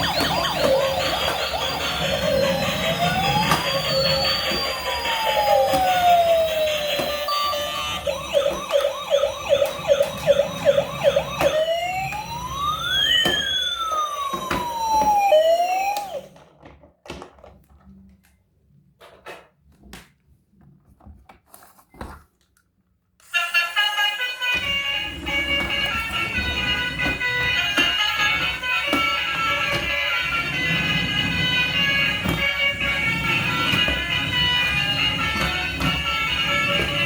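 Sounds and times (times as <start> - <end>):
police siren wailing and yelping: 0.0 - 16.3, 24.2 - 37.0.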